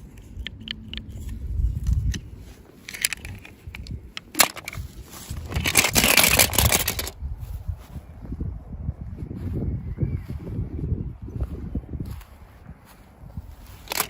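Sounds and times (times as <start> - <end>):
plastic packaging crinkling: 4.3 - 7.2.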